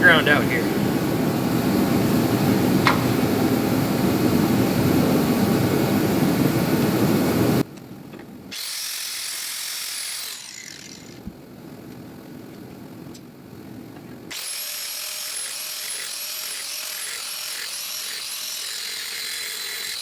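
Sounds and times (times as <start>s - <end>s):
angle grinder whining: 0.0s - 6.0s, 8.5s - 11.3s, 14.3s - 20.0s
heater rumbling: 0.0s - 7.6s.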